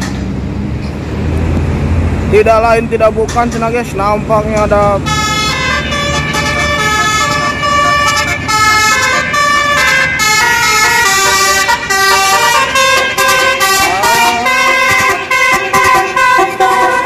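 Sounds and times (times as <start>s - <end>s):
bus engine: 0.0s - 17.0s
road noise: 0.0s - 17.0s
multi-trumpet air horns playing a tune: 5.0s - 17.0s.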